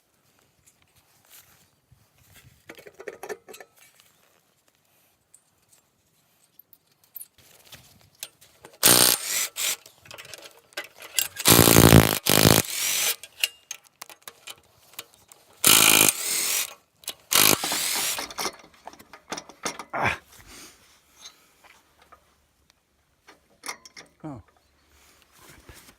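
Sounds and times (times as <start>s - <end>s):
ratchet clicking: 8.8s - 9.8s, 11.2s - 13.5s, 15.6s - 18.5s.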